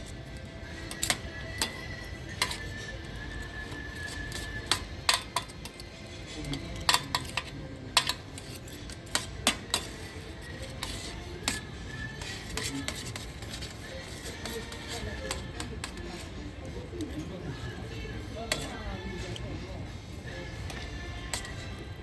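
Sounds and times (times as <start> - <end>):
background music: 0.0 - 22.0
cutlery clinking on a plate: 0.9 - 2.9, 3.6 - 16.3.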